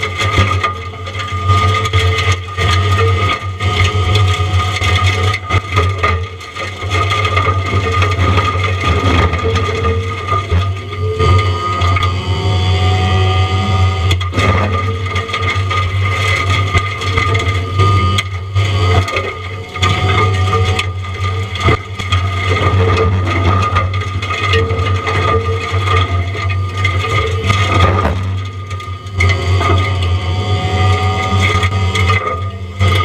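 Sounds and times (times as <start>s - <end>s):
wood cracking and crunching: 0.0s - 12.1s, 14.0s - 33.0s
engine running under load: 0.0s - 33.0s
high whine: 22.3s - 33.0s.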